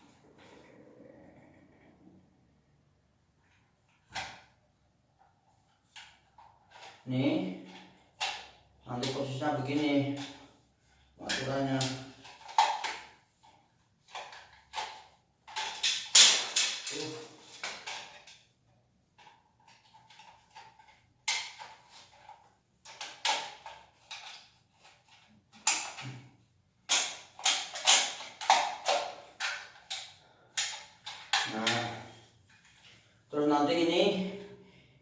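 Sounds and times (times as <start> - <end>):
plastic parts clacking and scraping: 5.2 - 18.5, 19.1 - 33.1.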